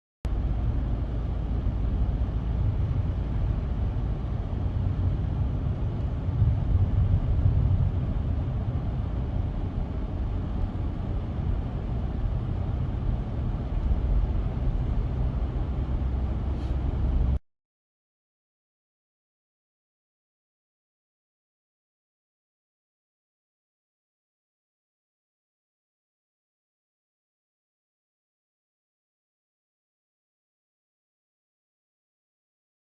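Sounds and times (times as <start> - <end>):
truck engine rumble: 0.3 - 17.4.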